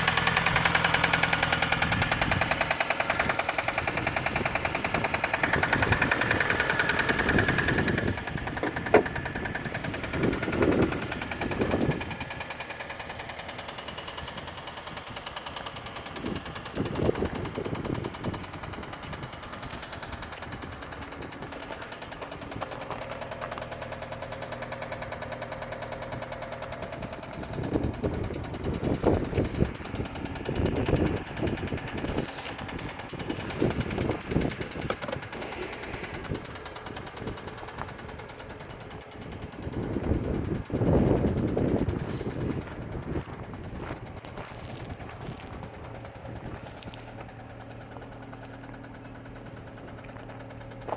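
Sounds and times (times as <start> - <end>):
car engine knocking: 0.0 - 50.9.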